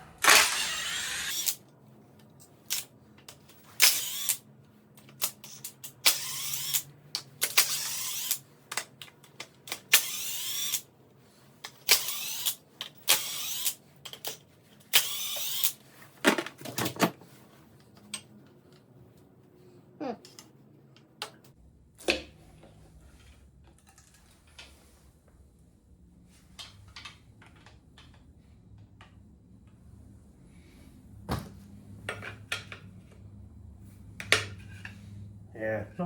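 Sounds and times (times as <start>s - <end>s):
ratchet wrench clicking: 0.2s - 1.6s, 3.8s - 4.4s, 5.2s - 8.4s, 9.7s - 10.9s, 11.7s - 15.8s.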